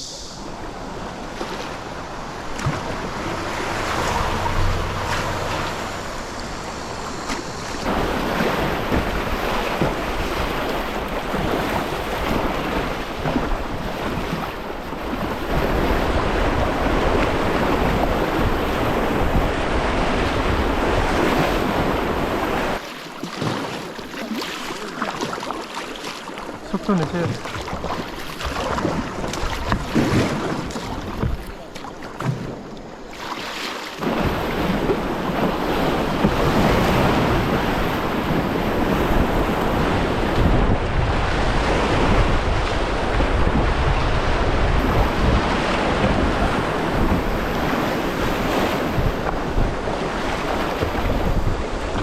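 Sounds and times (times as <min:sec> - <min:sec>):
wind buffeting microphone: 0:00.0 - 0:22.8, 0:34.0 - 0:52.0
river rapids rushing: 0:00.0 - 0:30.7.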